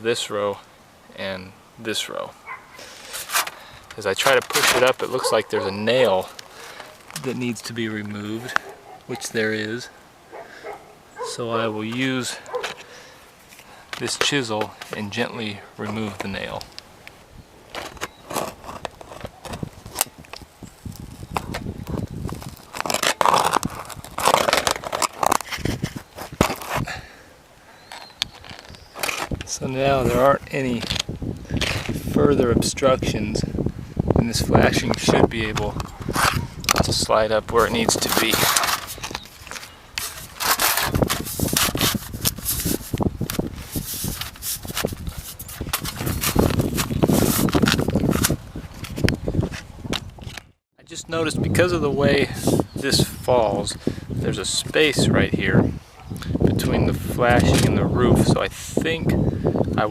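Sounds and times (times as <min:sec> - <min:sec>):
chisel scraping under roof shingles: 0:02.8 - 0:07.4, 0:17.7 - 0:20.1, 0:21.5 - 0:27.0, 0:27.8 - 0:29.5, 0:36.0 - 0:36.8, 0:37.6 - 0:49.6.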